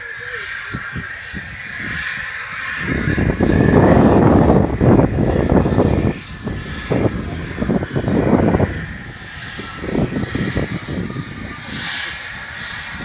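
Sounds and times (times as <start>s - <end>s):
airliner engines rumbling: 0.0s - 13.0s.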